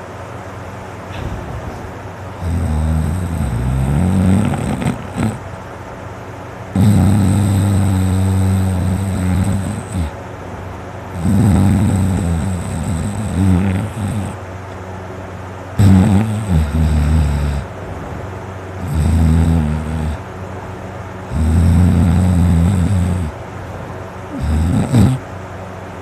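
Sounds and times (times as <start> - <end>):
man snoring deeply: 2.4 - 5.4, 6.8 - 10.2, 11.1 - 14.4, 15.8 - 17.7, 18.8 - 20.2, 21.3 - 23.4, 24.3 - 25.2.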